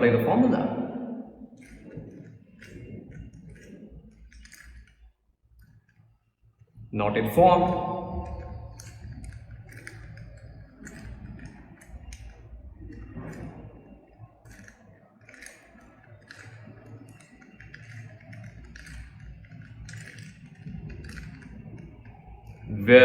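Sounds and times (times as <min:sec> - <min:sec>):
puzzle cube layers clicking: 0:01.6 - 0:05.0, 0:07.9 - 0:22.7.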